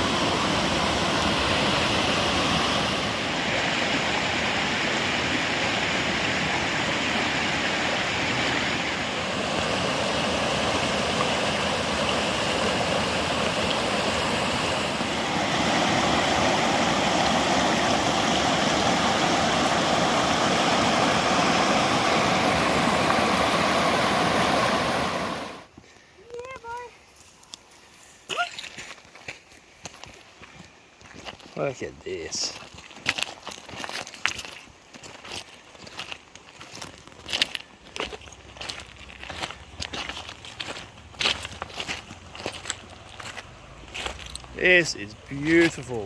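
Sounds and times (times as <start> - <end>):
fast-flowing river rushing: 0.0 - 25.7.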